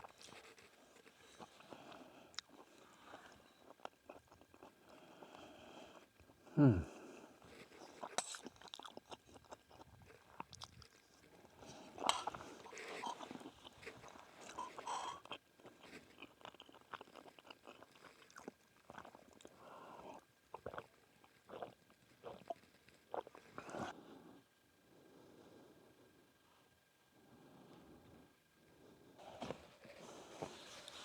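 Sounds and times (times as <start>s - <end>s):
person chewing food: 0.0s - 6.4s, 7.4s - 23.9s.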